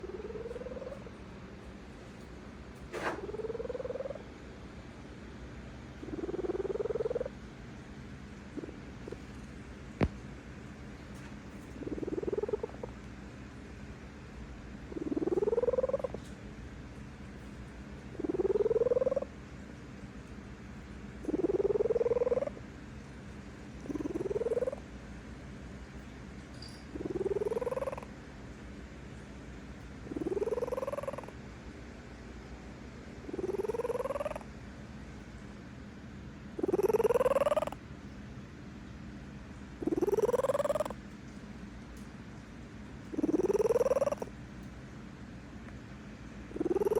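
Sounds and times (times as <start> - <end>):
cat purring: 0.0 - 1.2, 3.0 - 4.3, 6.0 - 7.4, 8.5 - 9.7, 11.7 - 13.0, 14.9 - 16.3, 18.1 - 19.3, 21.2 - 22.7, 23.7 - 24.9, 26.9 - 28.1, 30.0 - 31.4, 33.2 - 34.5, 36.6 - 37.8, 39.8 - 41.0, 43.1 - 44.4, 46.5 - 46.9.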